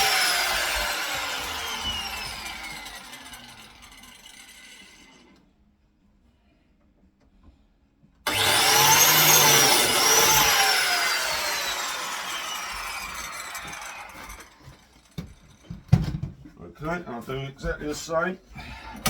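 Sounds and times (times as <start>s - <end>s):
blade cutting timber: 0.0s - 5.2s, 8.3s - 15.2s
biscuit joiner motor whining: 0.0s - 5.4s, 8.3s - 15.6s.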